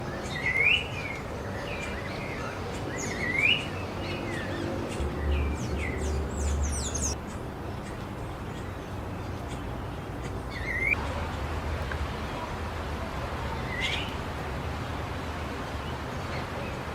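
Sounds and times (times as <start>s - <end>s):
birds whistling: 0.0s - 7.2s, 7.8s - 11.0s
high falling bird chirps: 0.0s - 7.2s.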